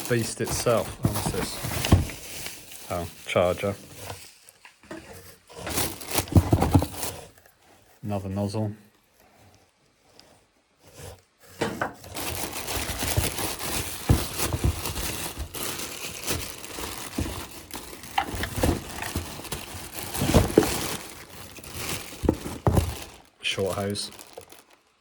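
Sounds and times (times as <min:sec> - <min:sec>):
plastic packaging crinkling: 0:00.0 - 0:04.8, 0:05.6 - 0:07.5, 0:12.0 - 0:25.0.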